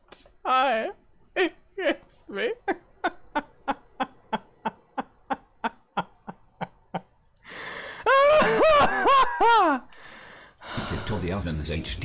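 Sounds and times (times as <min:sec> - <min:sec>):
man laughing breathily: 0:01.4 - 0:10.0.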